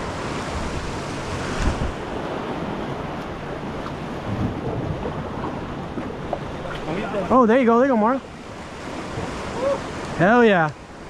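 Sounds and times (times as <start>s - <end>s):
wind buffeting microphone: 0.0s - 7.5s
waves washing against rocks: 0.0s - 11.0s.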